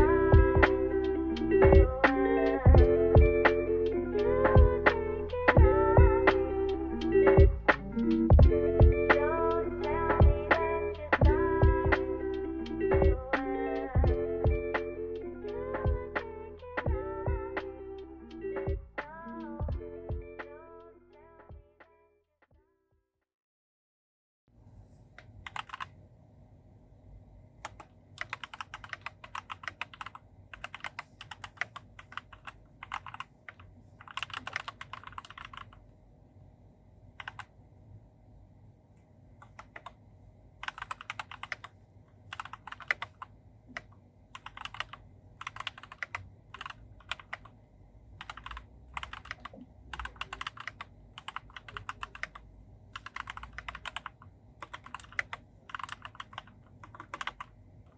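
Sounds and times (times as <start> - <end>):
mechanical keyboard typing: 25.2 - 25.9, 27.6 - 35.8, 37.2 - 37.5, 39.4 - 39.9, 40.6 - 41.7, 42.3 - 47.5, 48.2 - 52.4, 53.0 - 57.5.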